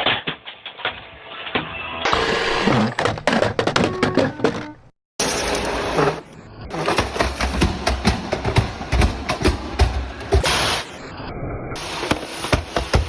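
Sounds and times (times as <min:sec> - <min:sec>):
robot vacuum knocking and clattering: 0:06.7 - 0:10.7, 0:12.0 - 0:13.0.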